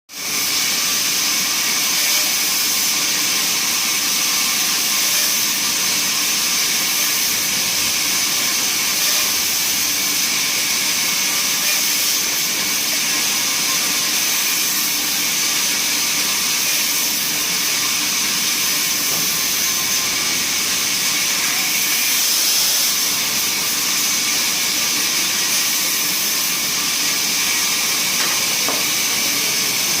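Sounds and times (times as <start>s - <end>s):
bandsaw cutting wood: 0.2s - 30.0s.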